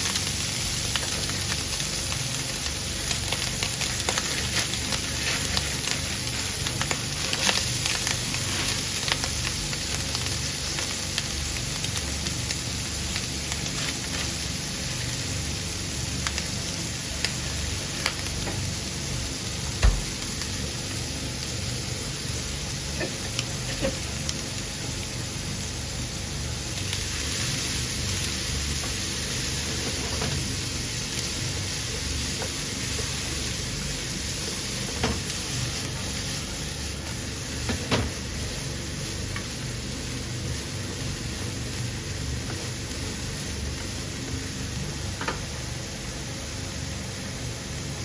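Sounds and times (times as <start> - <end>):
food sizzling in a frying pan: 0.0 - 48.0.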